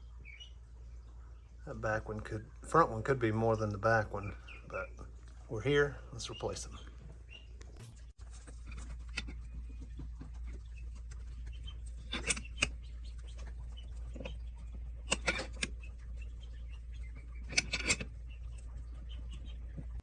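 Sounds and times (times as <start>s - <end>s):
low hum: 0.0s - 20.0s.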